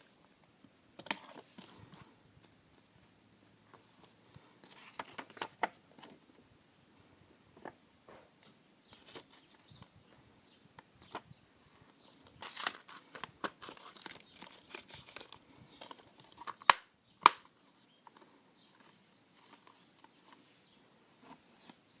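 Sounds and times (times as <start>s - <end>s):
plastic packaging crinkling: 12.4s - 16.7s
sharp plastic clicks: 16.4s - 17.5s.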